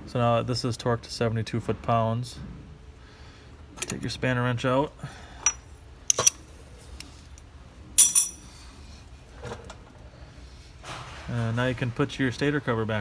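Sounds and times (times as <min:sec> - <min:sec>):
metal hand tools clinking: 0:05.4 - 0:06.4, 0:08.0 - 0:08.5.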